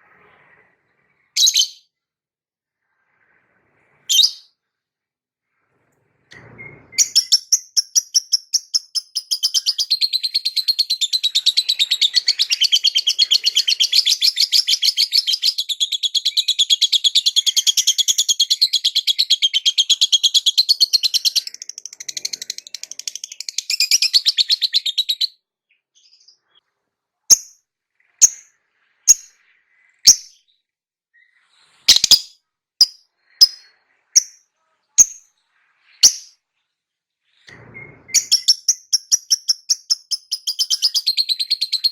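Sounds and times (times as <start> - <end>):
lovebird sharp chirps: 1.4 - 1.8, 4.1 - 4.5, 6.9 - 25.4, 27.3 - 27.6, 28.2 - 29.4, 30.0 - 30.5, 31.8 - 35.3, 35.9 - 36.4, 38.1 - 41.9
lovebird trilling: 28.2 - 28.5, 31.9 - 34.4, 36.0 - 36.3.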